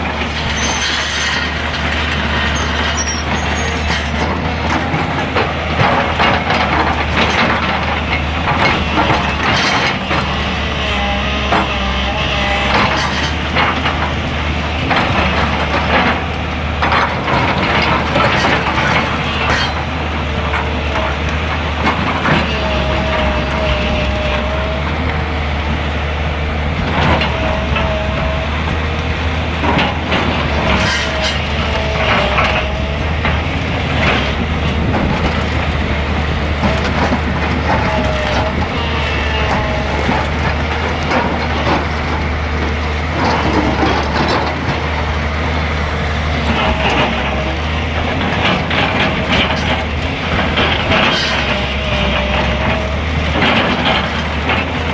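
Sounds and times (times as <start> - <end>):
excavator engine running: 0.0 - 54.9
short squeals: 0.4 - 4.1.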